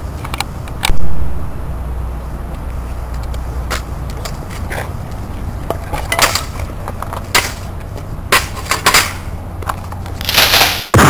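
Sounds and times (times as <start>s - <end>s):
low rumble: 0.0s - 8.4s
sharp knocks and bangs: 8.3s - 9.3s, 10.3s - 11.0s
loud crash: 10.2s - 11.0s.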